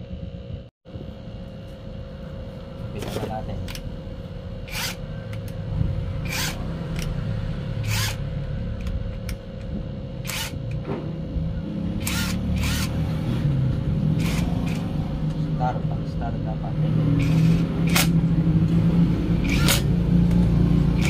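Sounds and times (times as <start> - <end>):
steady low rumble: 0.0 - 21.0
ratchet wrench ratcheting: 4.6 - 5.6, 6.2 - 7.2, 7.8 - 10.8, 12.0 - 13.1, 14.1 - 15.1, 17.1 - 18.2, 19.4 - 21.0.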